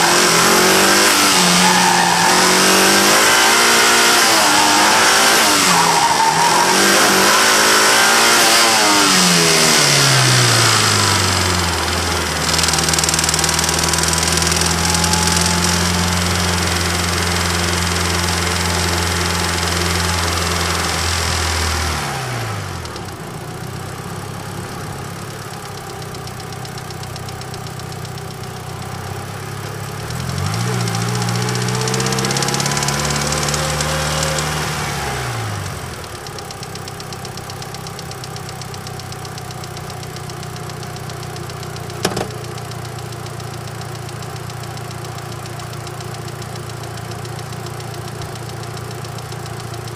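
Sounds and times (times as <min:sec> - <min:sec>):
car engine knocking: 0:09.6 - 0:21.4, 0:22.8 - 0:34.7, 0:35.9 - 0:49.9.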